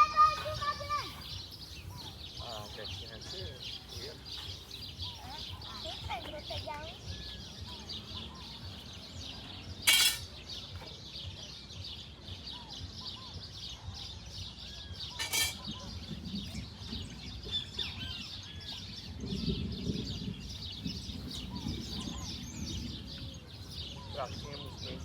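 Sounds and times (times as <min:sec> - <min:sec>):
small birds chirping: 0:00.0 - 0:25.0.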